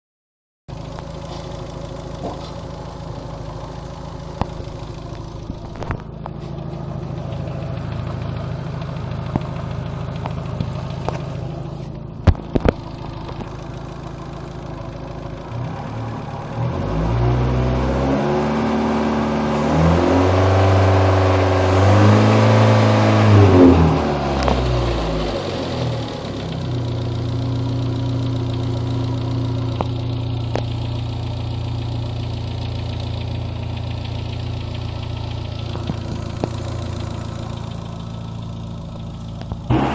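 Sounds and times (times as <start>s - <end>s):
car engine idling and revving: 0.7s - 39.9s
sharp clicks: 35.4s - 38.0s.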